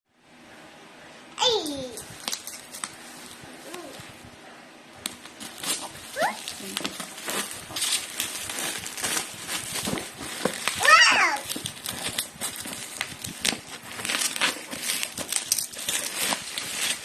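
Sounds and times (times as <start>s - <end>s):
small child vocal sounds: 1.4s - 2.0s, 3.6s - 4.1s, 6.1s - 6.6s, 10.7s - 11.6s
packaging rustling and crinkling: 2.0s - 4.2s, 5.0s - 17.0s.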